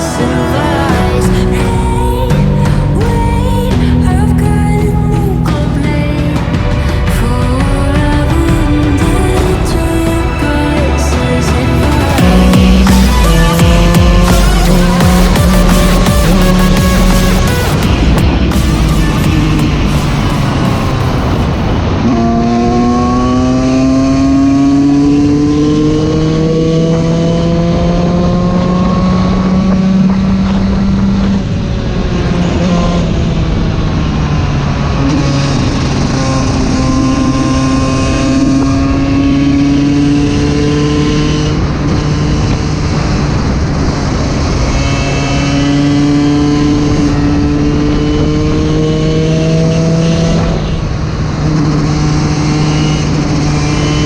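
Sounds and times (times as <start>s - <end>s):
two-stroke motorcycle engine: 6.5s - 22.6s.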